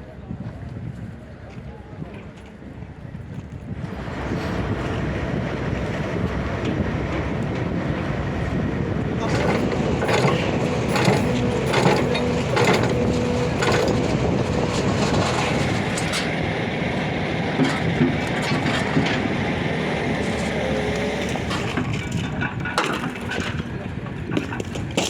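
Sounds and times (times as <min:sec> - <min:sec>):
heavy machinery running: 0:03.7 - 0:25.0
sharp metal clanks and knocks: 0:09.3 - 0:16.3.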